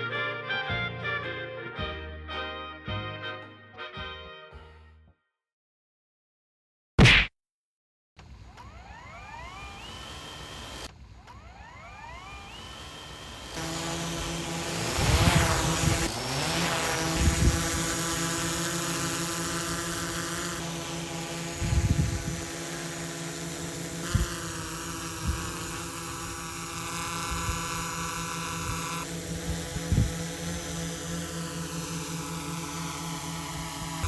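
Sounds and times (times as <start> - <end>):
drone propellers whining: 8.4 - 34.0.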